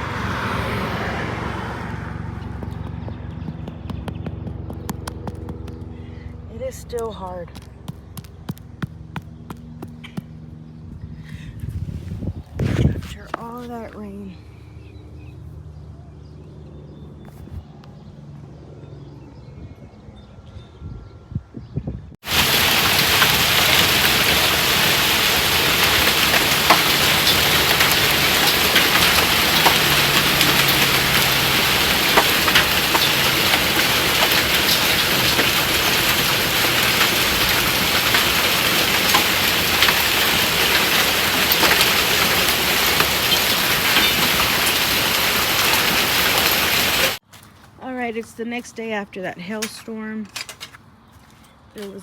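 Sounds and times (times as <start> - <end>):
hail ticking: 22.2 - 47.2
heavy rain pouring: 22.2 - 47.2.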